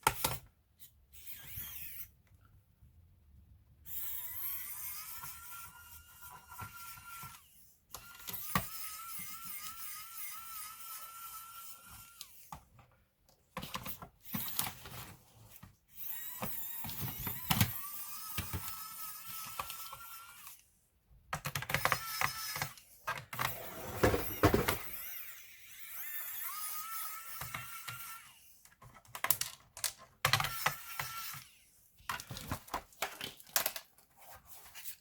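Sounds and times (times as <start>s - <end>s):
clicks and knocks of parts: 32.1s - 34.0s.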